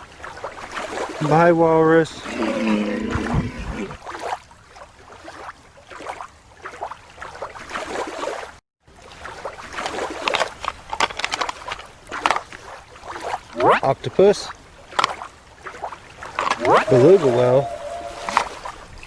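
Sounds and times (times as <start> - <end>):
water sloshing and splashing: 0.0 - 19.0.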